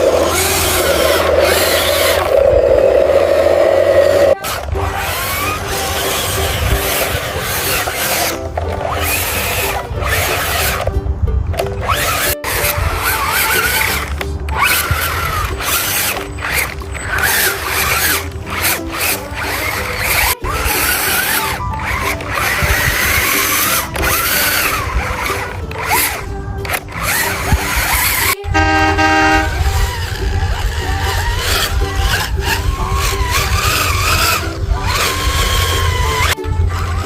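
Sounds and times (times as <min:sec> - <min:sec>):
background music: 0:00.0 - 0:37.0
horn blast: 0:28.3 - 0:30.0.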